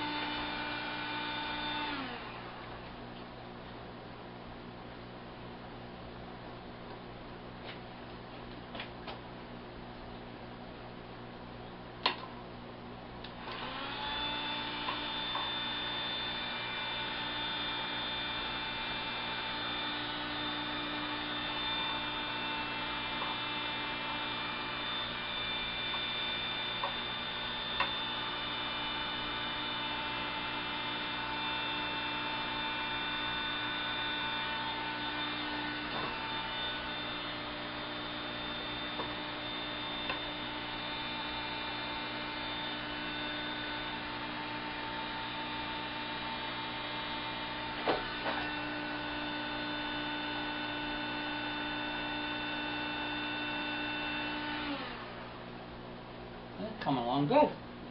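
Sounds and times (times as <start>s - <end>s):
heat gun motor whine: 0.0s - 2.7s, 13.2s - 55.5s.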